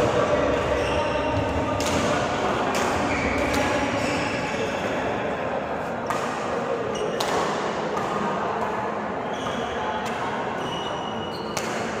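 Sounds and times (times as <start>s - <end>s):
shoes squeaking on court floor: 0.6s - 1.6s, 3.0s - 4.9s, 6.9s - 7.4s, 9.2s - 12.0s
rackets hitting shuttlecock: 1.4s - 4.0s, 6.0s - 10.3s, 11.5s - 12.0s.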